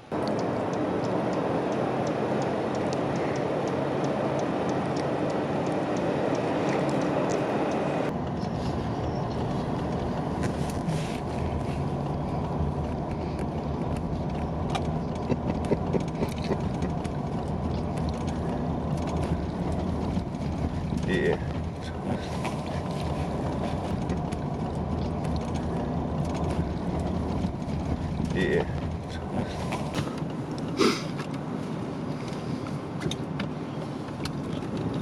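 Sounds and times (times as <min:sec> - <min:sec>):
road and engine noise: 0:00.0 - 0:35.0
clicks and crackles: 0:09.3 - 0:31.4.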